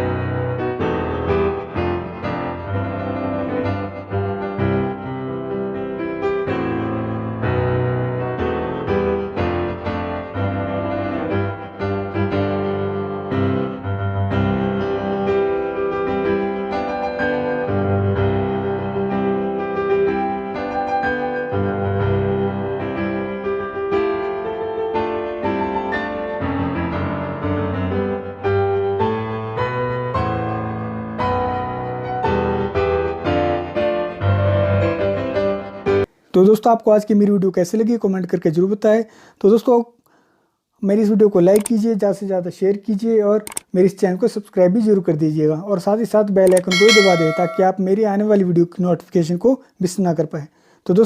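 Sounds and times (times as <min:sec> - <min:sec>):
background piano music: 0:00.0 - 0:36.1, 0:46.5 - 0:48.2.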